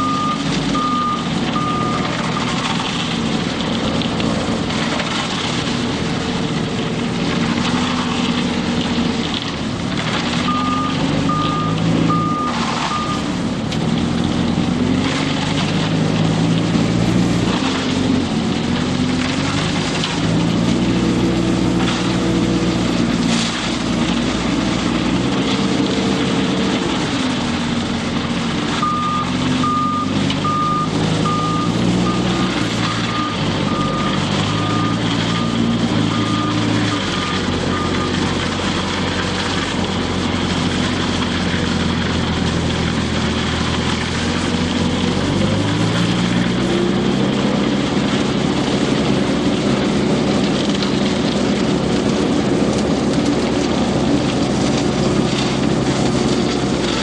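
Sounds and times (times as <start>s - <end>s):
reversing alarm beeping: 0.0s - 2.2s, 10.5s - 13.3s, 28.8s - 38.3s
diesel truck engine running: 0.0s - 57.0s.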